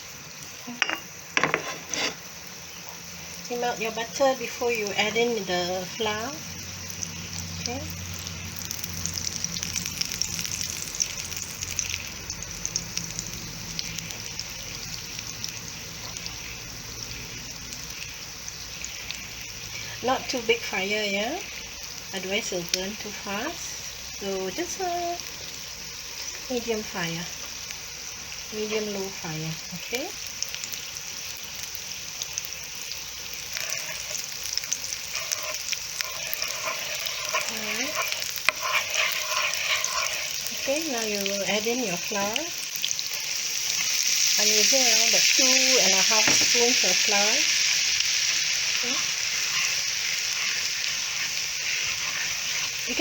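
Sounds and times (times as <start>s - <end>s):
butter sizzling in a pan: 0.0s - 53.0s
small crackles: 30.4s - 42.2s.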